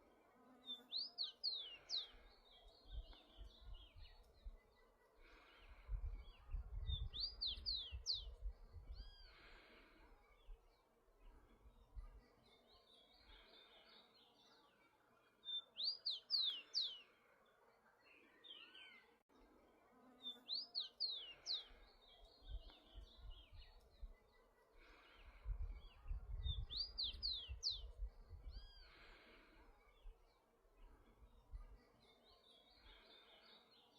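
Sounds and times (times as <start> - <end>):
sparrow whistling song: 26.3 - 28.9.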